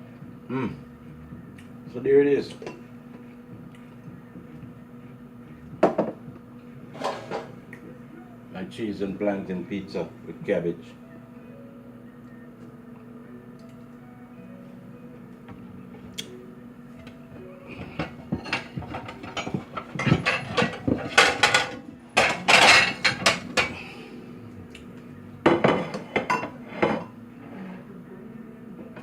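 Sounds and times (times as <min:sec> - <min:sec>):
utensils clinking on dishes: 0:02.5 - 0:02.9, 0:06.9 - 0:07.6, 0:17.7 - 0:24.0, 0:25.4 - 0:27.2.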